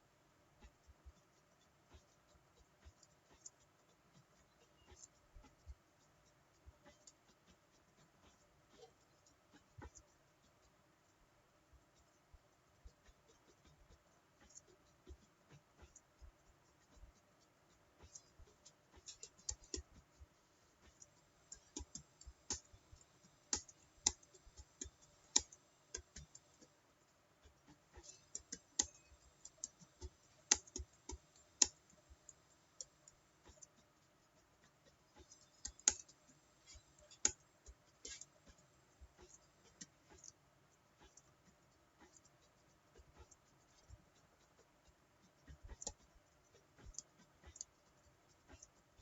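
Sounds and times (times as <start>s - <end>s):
keyboard typing: 17.7s - 49.0s.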